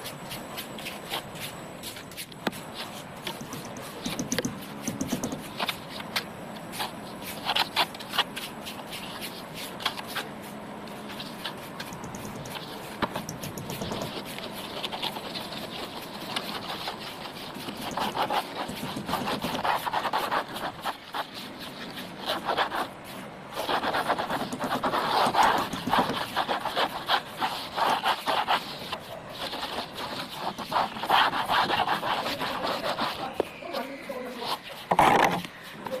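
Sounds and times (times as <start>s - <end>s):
plastering tool scraping wall: 11.0s - 36.0s.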